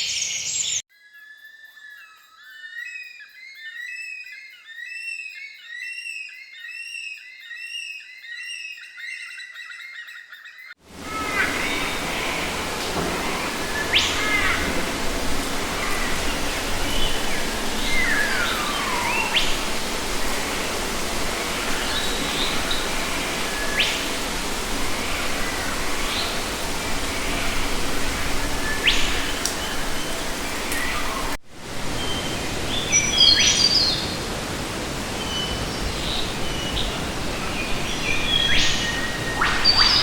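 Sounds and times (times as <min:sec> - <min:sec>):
birds chirping: 0:00.0 - 0:00.9, 0:02.0 - 0:40.0
bird whistled calls: 0:00.0 - 0:14.9, 0:27.1 - 0:31.4, 0:38.1 - 0:40.0
loud steady rushing noise: 0:10.8 - 0:33.2.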